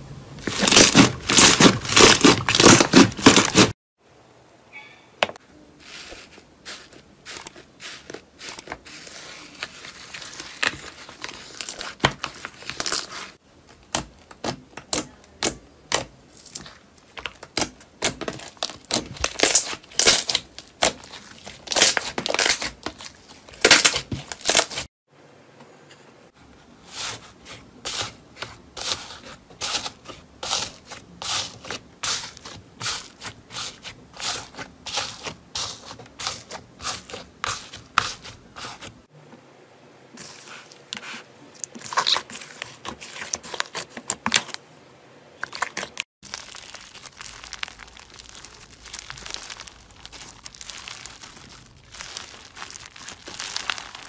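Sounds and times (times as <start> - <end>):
slime crackling and popping: 17.2 - 24.8, 45.4 - 54.0.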